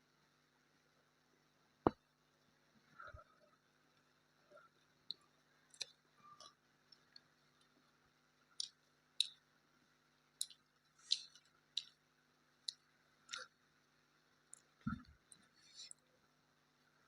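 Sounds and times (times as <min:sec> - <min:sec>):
wet mouth clicks while chewing: 0:08.6 - 0:09.4, 0:10.4 - 0:12.0, 0:12.6 - 0:13.5.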